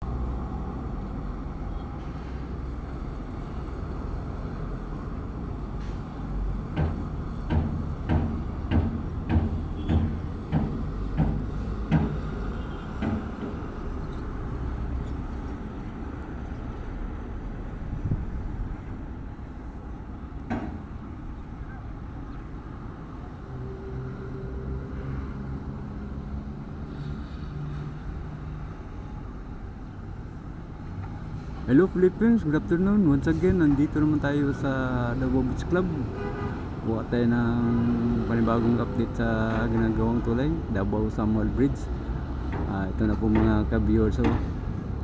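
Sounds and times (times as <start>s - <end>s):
evenly spaced knocks: 6.7s - 12.4s, 13.0s - 13.6s, 42.4s - 44.6s.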